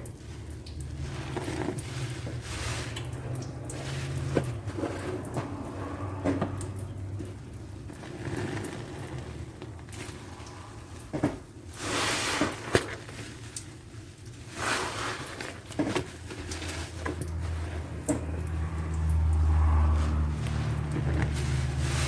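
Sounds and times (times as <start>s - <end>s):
soapy sponge squelching: 0.0s - 22.0s.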